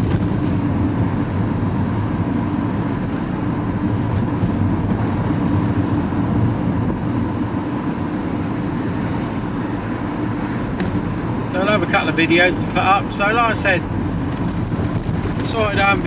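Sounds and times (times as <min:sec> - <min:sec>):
vehicle engine and road noise: 0:00.0 - 0:16.0.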